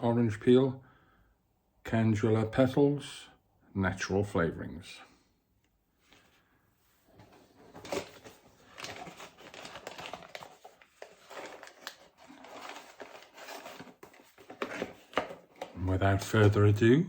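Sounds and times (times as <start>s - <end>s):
handling rustling: 7.0s - 16.6s.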